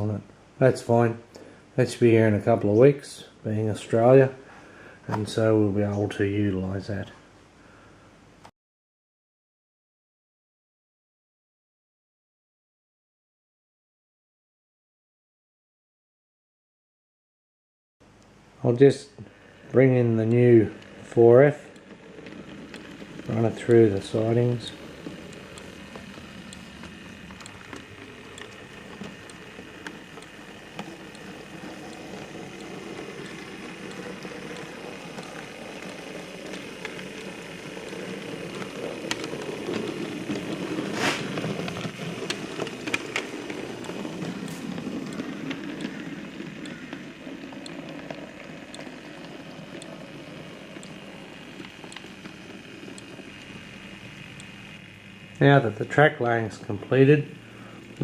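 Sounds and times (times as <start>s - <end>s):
clicks: 19.7s - 55.6s
model train rumbling on track: 19.8s - 58.0s.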